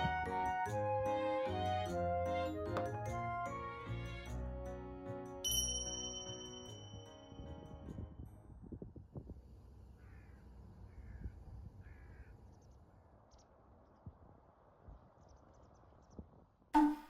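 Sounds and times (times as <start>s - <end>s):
low wind rumble: 7.2s - 16.6s
crow cawing: 10.0s - 12.3s
loud musical note: 16.8s - 17.0s.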